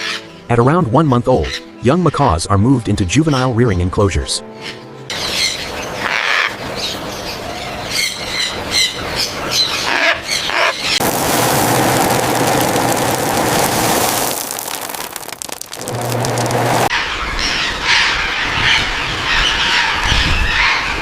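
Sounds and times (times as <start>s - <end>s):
macaws squawking and screeching: 4.6s - 11.0s, 17.0s - 21.0s.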